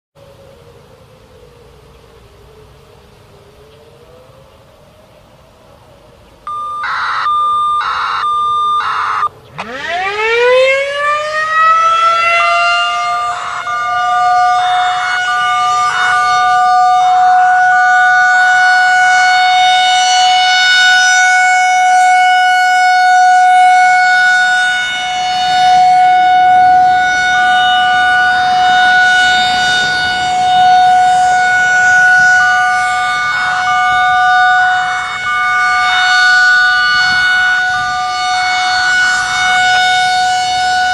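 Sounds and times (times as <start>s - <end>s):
outdoor warning siren wail: 0.2s - 40.9s
radio activation beeps: 6.5s - 9.3s.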